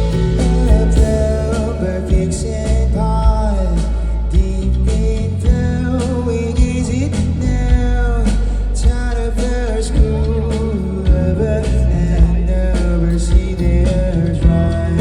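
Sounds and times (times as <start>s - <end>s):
bass guitar: 0.0s - 15.0s
electric guitar: 0.0s - 15.0s
person singing: 0.0s - 15.0s
steady drum beat: 0.0s - 15.0s.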